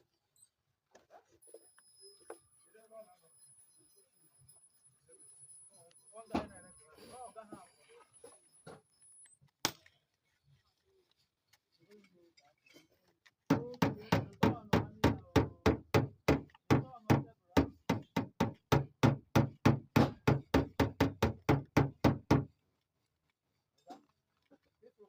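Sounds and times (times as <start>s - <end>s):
rapid sharp knocks: 13.5s - 22.5s.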